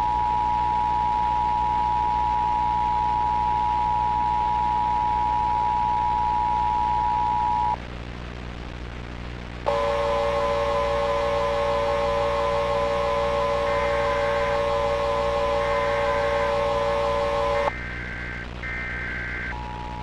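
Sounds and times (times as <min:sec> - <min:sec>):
low hum and hiss: 0:00.0 - 0:20.0
two-tone alarm: 0:09.7 - 0:17.7
wavering higher tone: 0:09.7 - 0:17.7
lower pair of steady tones: 0:09.7 - 0:20.0.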